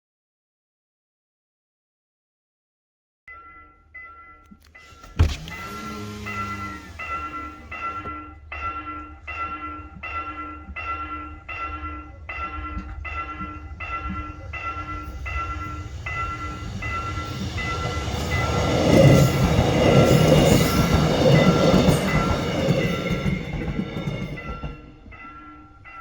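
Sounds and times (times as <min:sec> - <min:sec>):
warning bell dinging: 0:03.3 - 0:19.1
train rumbling: 0:04.5 - 0:26.0.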